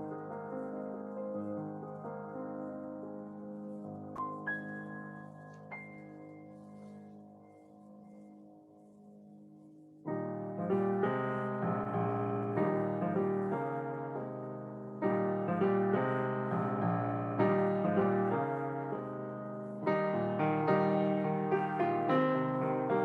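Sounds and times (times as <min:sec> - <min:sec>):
piano music: 0:00.0 - 0:23.0.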